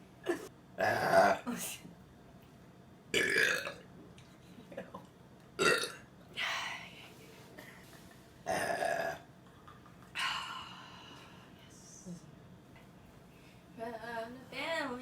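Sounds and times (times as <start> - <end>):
person burping loudly: 0.8 - 1.4, 3.2 - 3.8, 5.6 - 6.0, 8.5 - 9.2.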